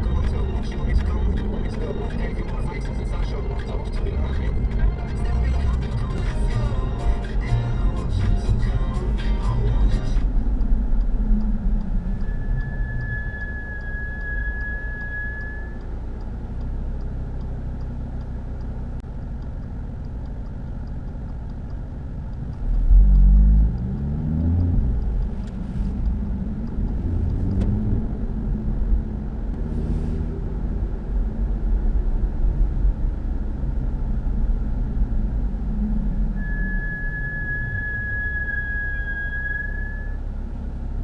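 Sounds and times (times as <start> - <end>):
brake squeal: 7.6 - 18.1, 29.6 - 30.6, 35.7 - 40.9
car engine revving: 20.5 - 41.0.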